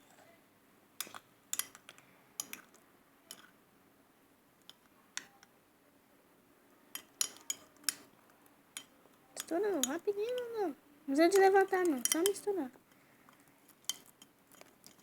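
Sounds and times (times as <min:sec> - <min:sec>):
utensil clinking against a bowl: 0:06.9 - 0:08.0, 0:08.8 - 0:10.7, 0:11.3 - 0:15.0.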